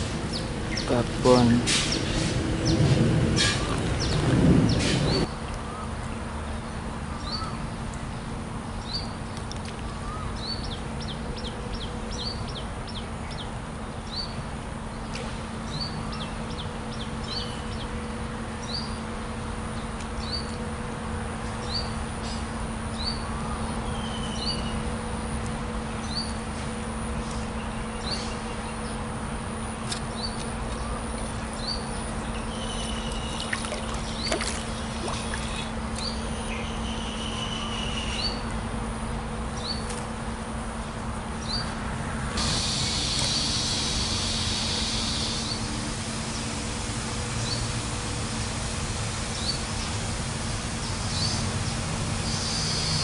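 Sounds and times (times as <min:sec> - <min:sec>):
steady low hum: 0:00.0 - 0:53.0
small birds chirping: 0:29.9 - 0:38.5
even hiss: 0:42.4 - 0:53.0.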